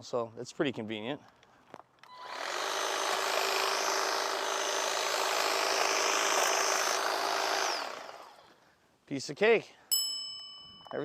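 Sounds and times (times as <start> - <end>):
hedge trimmer cutting: 2.1 - 8.6.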